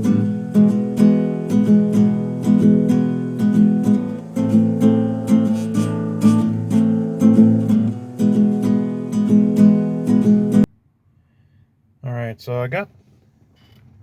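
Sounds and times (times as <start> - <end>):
strummed acoustic guitar chords: 0.0 - 10.7.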